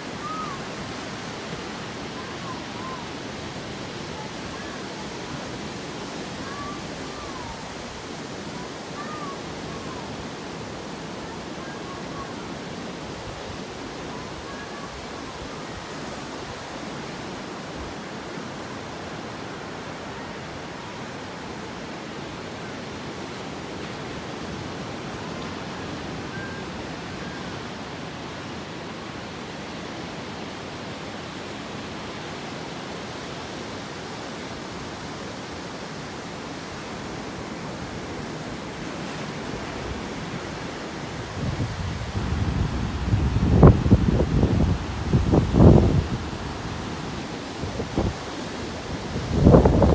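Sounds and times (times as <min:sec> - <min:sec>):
heavy surf breaking: 0:36.7 - 0:49.9.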